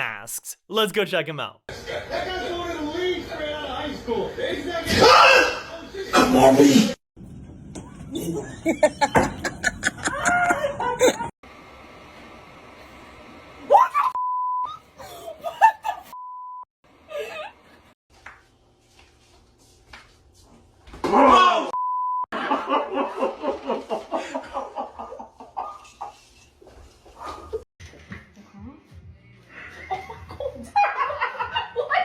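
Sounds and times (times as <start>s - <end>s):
person shouting: 0.0s - 0.6s, 21.1s - 21.7s
people laughing: 8.2s - 11.3s, 22.4s - 25.9s, 29.5s - 32.0s
censor bleeps: 21.8s - 22.2s.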